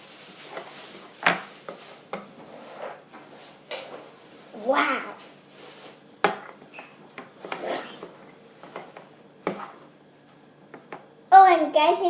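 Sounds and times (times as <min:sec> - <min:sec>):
utensil scraping and knocking bowl: 0:06.2 - 0:09.9.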